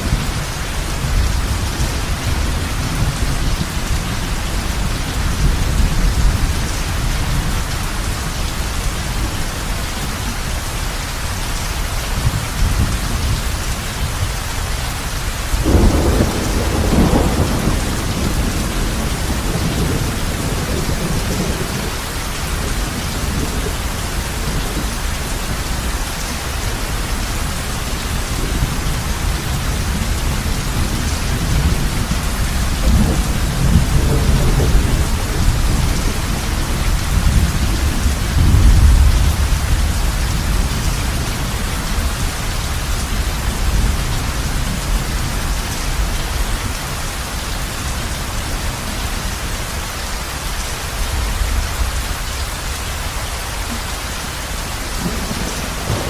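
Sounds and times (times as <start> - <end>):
low rumble of thunder: 0.0 - 47.2, 54.6 - 56.0
heavy rain on a roof: 0.0 - 56.0
thunderclap: 15.6 - 22.0, 55.0 - 56.0.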